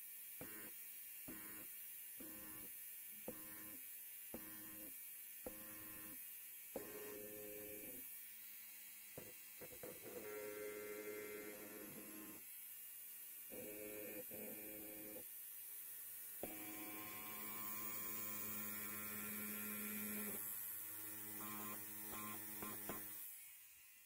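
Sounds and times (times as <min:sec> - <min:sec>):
electric hair clipper buzzing: 0:16.4 - 0:24.0.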